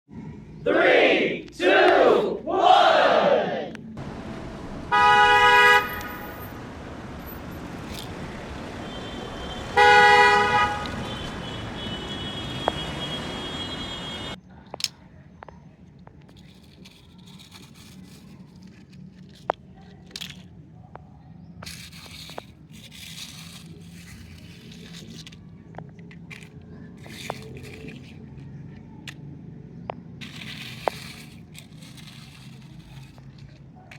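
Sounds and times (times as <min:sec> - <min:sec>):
steady rushing noise: 0:03.9 - 0:09.8
car horn honking: 0:04.0 - 0:07.3, 0:08.6 - 0:14.4
small clicks and crackles: 0:14.6 - 0:33.9.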